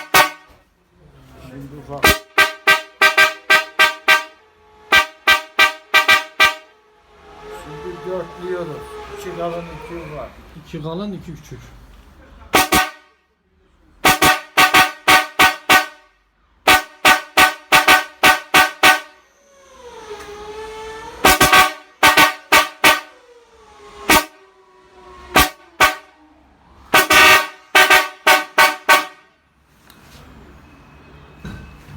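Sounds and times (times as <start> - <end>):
car horns tooting: 0.0 - 0.8, 1.9 - 10.7, 12.3 - 13.4, 14.0 - 19.4, 21.0 - 29.4
long horn tone sagging in pitch: 2.3 - 10.5.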